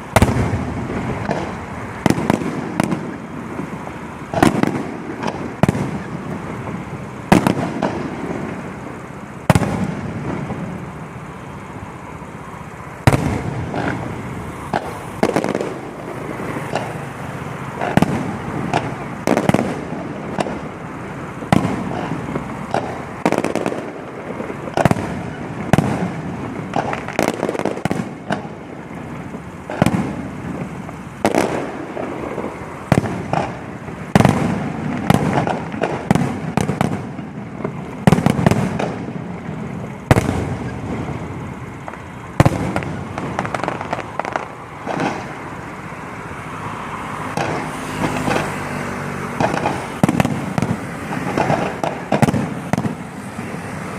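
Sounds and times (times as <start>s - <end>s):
fireworks bangs: 0.0s - 53.9s
pops and crackling: 21.6s - 23.1s, 26.7s - 28.5s, 32.3s - 33.6s, 41.8s - 45.4s, 49.4s - 52.9s.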